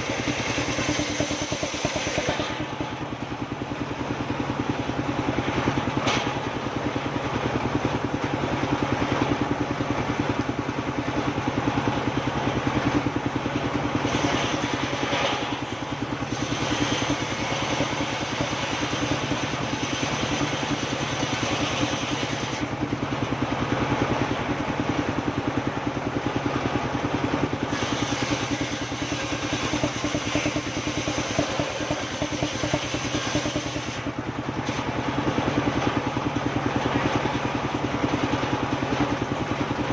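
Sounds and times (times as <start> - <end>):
sawmill engine running: 0.0 - 39.9
high-pitched sawing sound: 27.7 - 34.1.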